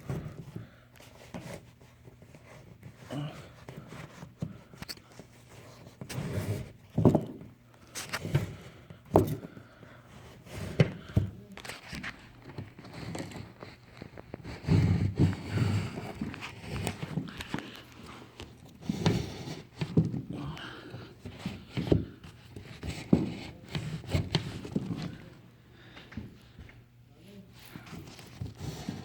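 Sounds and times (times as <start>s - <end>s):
knocks and thumps from handling: 6.0s - 9.7s, 18.6s - 20.5s, 21.2s - 25.3s.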